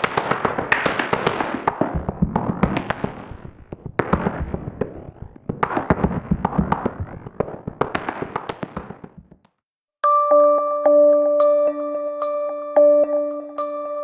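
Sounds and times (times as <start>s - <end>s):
crackling fireworks: 0.0s - 9.5s.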